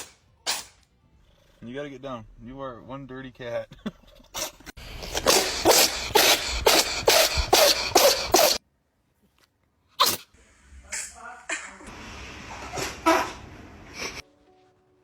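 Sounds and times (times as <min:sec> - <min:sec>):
cat sneezing: 0:04.4 - 0:08.6, 0:10.0 - 0:10.3.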